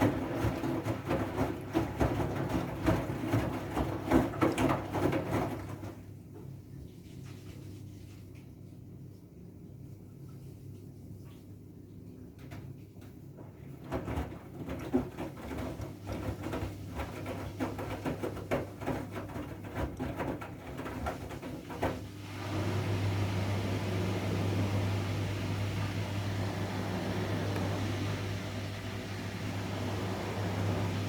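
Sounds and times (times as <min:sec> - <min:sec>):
drum knocks and sloshing: 0:00.0 - 0:06.1, 0:13.4 - 0:31.0
motor hum with rushing noise: 0:22.1 - 0:31.0.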